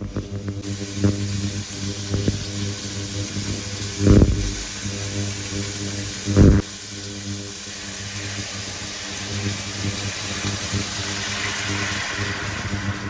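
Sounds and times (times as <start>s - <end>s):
low mechanical hum: 0.0s - 11.2s
hiss: 0.0s - 13.0s
sharp knock: 4.1s - 4.7s.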